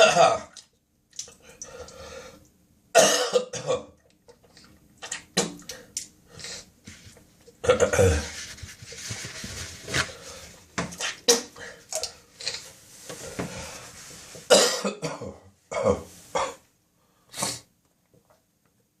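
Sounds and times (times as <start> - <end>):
person coughing: 0.0 - 0.5, 3.0 - 3.9, 7.6 - 8.4, 14.5 - 16.6.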